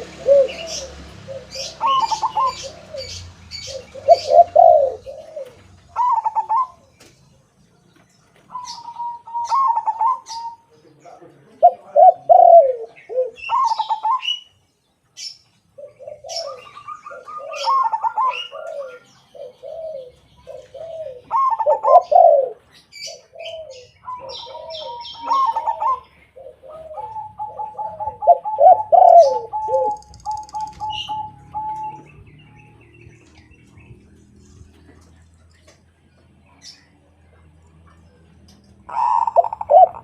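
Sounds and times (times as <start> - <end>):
doves cooing: 0.0 - 14.6, 15.2 - 40.0.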